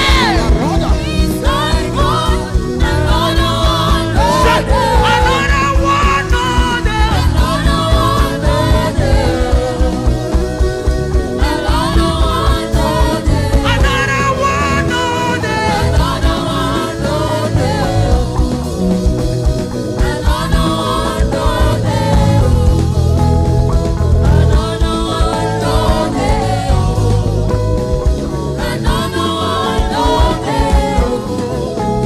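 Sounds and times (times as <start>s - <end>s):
band playing: 0.0s - 32.0s
voices singing: 0.0s - 32.0s.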